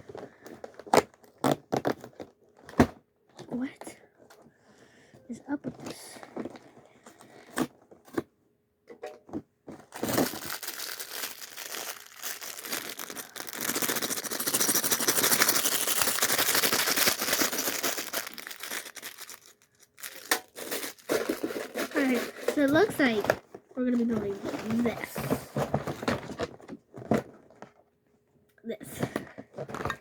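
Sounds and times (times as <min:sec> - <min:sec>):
packaging crinkling and tearing: 0:00.0 - 0:02.9, 0:09.8 - 0:23.5.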